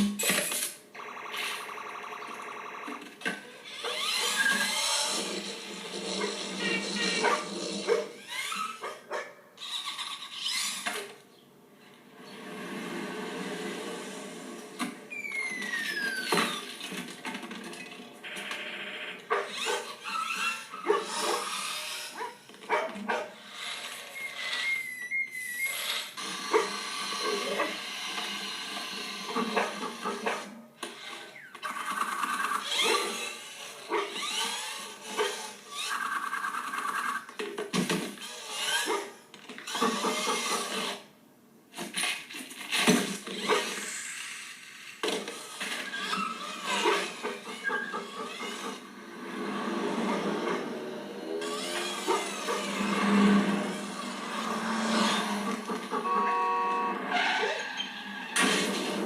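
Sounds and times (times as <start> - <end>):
dog barking: 7.2 - 8.1, 8.8 - 9.4, 19.3 - 19.9, 20.8 - 21.5, 22.2 - 23.4, 26.5 - 27.8, 29.5 - 30.5
vehicle sounds: 48.7 - 59.0.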